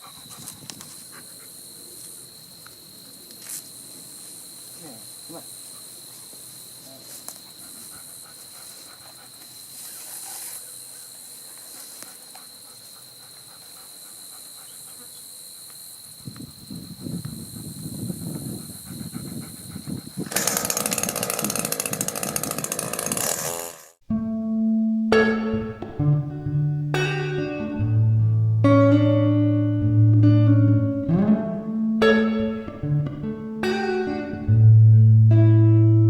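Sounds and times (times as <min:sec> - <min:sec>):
insects trilling: 0:00.0 - 0:24.0.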